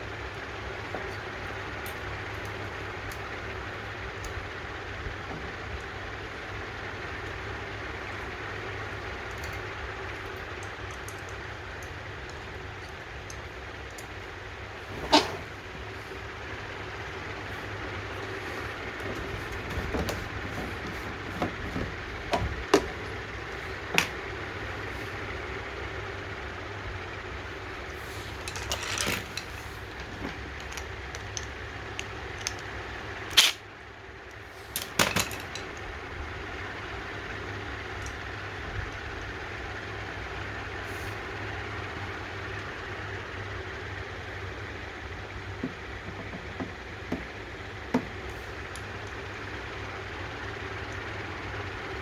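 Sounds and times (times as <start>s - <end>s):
steady background hum: 0.0s - 52.0s
metal tools clicking and knocking: 28.3s - 32.7s, 34.7s - 35.9s.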